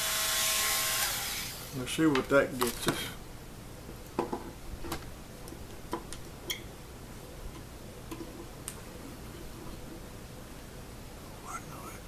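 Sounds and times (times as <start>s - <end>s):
faint steady hiss: 0.0s - 12.0s.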